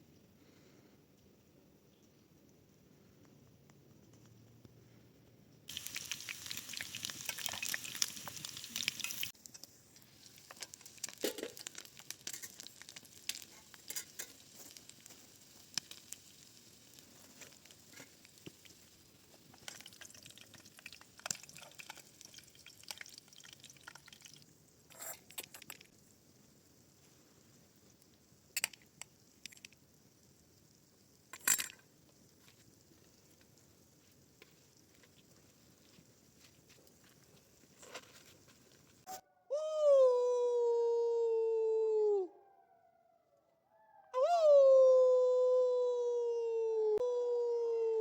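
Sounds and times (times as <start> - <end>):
food sizzling in a pan: 5.7 - 39.1
small clicks and taps in pan: 6.8 - 16.4, 17.3 - 24.4, 25.2 - 26.0, 27.9 - 29.9.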